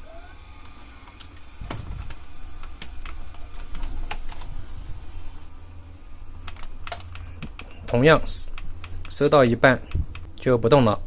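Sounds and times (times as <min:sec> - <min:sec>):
tape mechanism clicking: 0:00.0 - 0:04.6, 0:06.4 - 0:10.4
low hum: 0:00.0 - 0:11.0.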